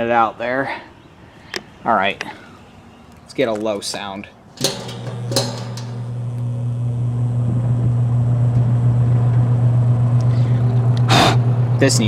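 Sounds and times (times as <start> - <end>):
fan motor hum: 3.9 - 9.0
fan switch click: 4.6 - 6.5.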